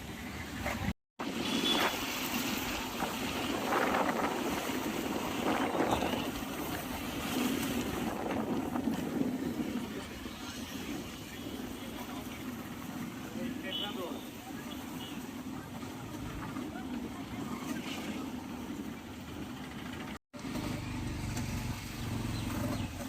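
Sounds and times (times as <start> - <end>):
motorcycle road noise: 0.0 - 23.0
wind buffeting the microphone: 2.6 - 11.7.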